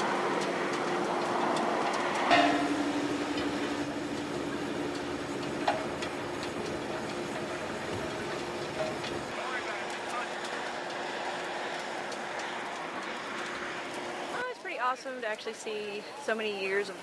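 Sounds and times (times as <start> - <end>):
furnace roaring and humming: 0.0 - 17.0
sharp metallic clank: 2.2 - 3.9.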